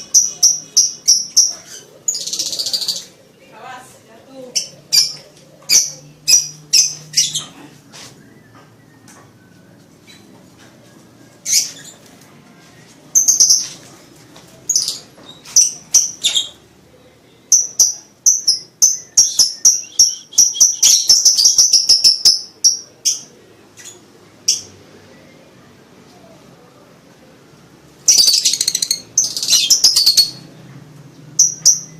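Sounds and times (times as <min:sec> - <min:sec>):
bird chirping: 0:00.0 - 0:03.2, 0:17.5 - 0:25.2, 0:28.1 - 0:31.9.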